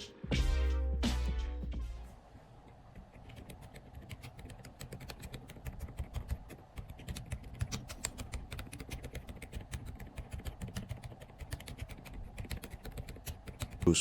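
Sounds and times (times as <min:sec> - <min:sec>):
quiet mechanical keyboard typing: 0:02.9 - 0:14.0.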